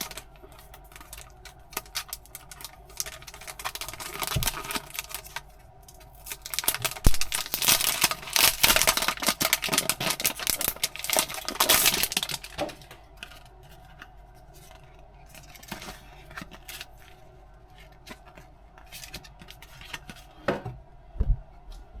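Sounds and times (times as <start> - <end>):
packaging crinkling and tearing: 0.0 - 20.3.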